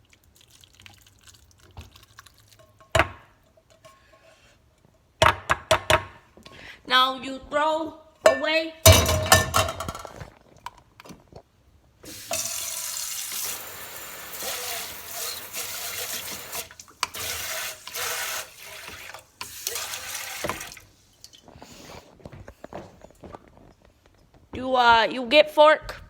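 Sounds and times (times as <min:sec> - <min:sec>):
water splashing into sink: 0:12.1 - 0:21.5.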